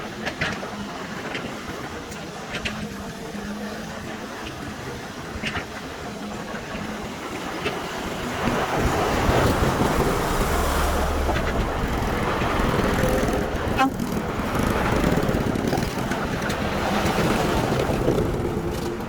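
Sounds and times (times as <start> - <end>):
diesel engines of heavy machinery: 0.0 - 19.0.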